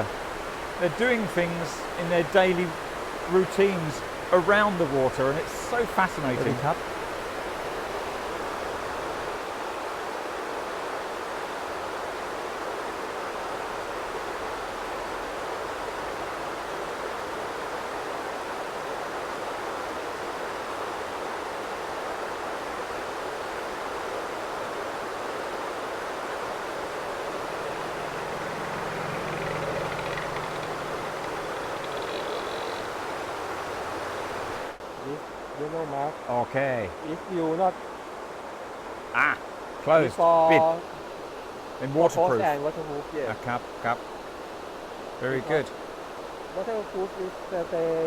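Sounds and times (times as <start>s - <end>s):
water rushing through weir: 0.0s - 10.0s, 24.2s - 34.8s.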